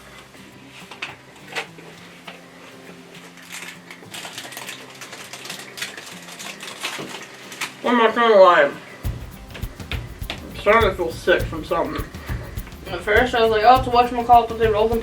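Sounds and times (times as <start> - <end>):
crunching and chewing chocolate bar: 3.5 - 7.7.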